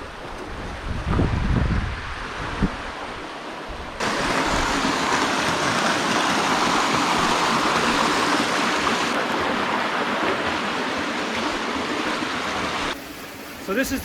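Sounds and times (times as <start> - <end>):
small waterfall splashing: 4.0 - 14.0.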